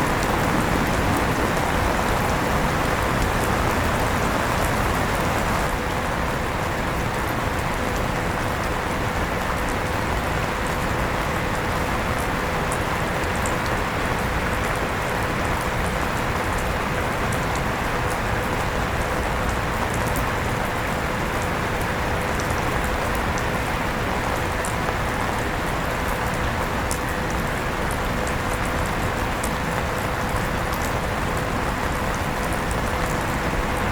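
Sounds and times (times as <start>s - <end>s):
electric fan humming: 0.0s - 5.7s
steady rain falling: 0.0s - 33.9s.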